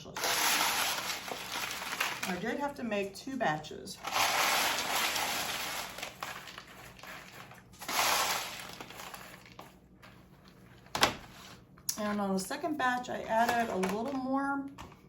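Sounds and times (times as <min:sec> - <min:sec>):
crunchy snack mix rattling: 0:00.1 - 0:02.4, 0:04.0 - 0:11.2.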